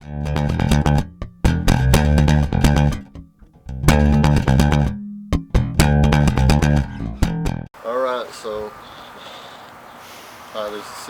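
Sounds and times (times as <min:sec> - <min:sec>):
rhythmic plucked intro music: 0:00.0 - 0:07.7.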